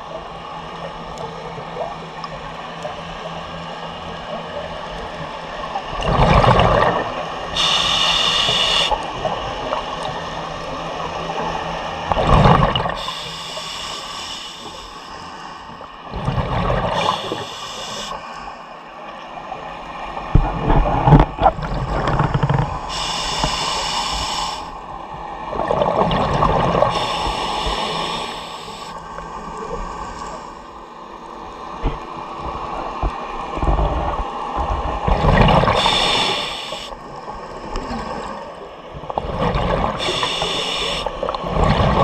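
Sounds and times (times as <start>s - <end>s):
exhaled air bubbling: 6.0s - 9.4s, 12.0s - 13.9s, 16.0s - 18.2s, 20.3s - 24.7s, 25.5s - 29.0s, 33.0s - 37.0s, 39.0s - 42.0s
regulator inhale hiss: 7.6s - 9.0s, 13.0s - 15.8s, 16.9s - 18.5s, 22.8s - 24.8s, 26.8s - 29.0s, 35.7s - 37.0s, 40.0s - 41.2s.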